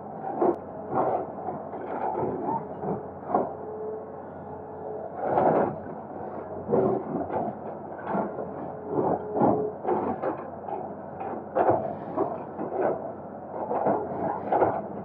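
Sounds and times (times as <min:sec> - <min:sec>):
excavator engine hum: 0:00.0 - 0:15.0.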